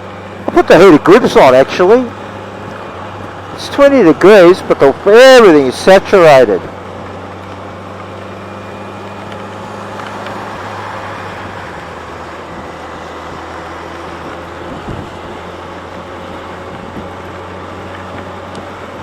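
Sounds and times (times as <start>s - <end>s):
road spray: 0.0s - 16.6s
motorcycle engine cruising: 0.0s - 19.0s
wind: 0.0s - 19.0s.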